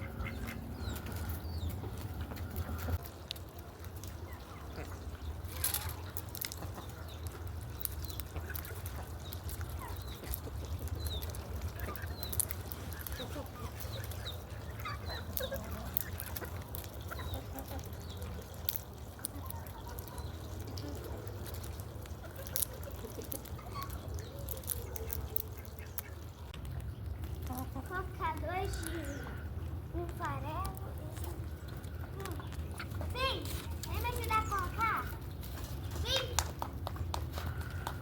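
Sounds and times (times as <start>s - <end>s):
poultry calling: 0.0s - 3.0s.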